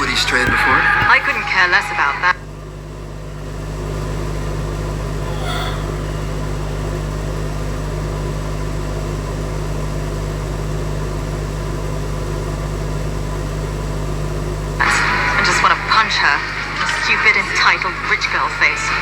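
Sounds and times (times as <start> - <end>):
steady low hum: 0.0 - 11.1.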